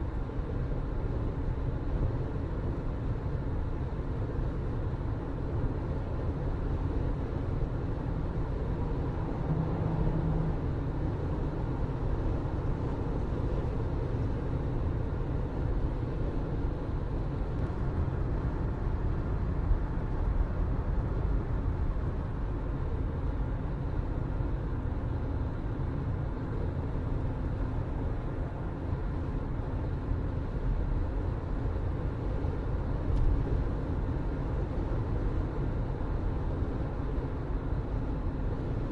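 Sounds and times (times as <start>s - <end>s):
moving vehicle rumble: 0.0s - 38.9s.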